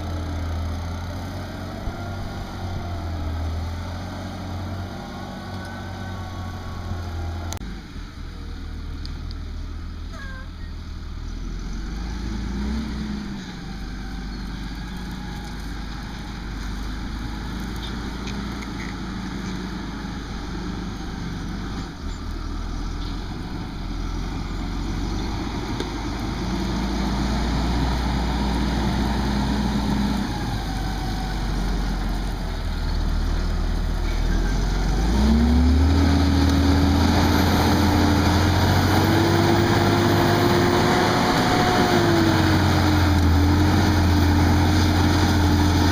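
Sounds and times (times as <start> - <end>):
tractor engine running: 0.0 - 45.9.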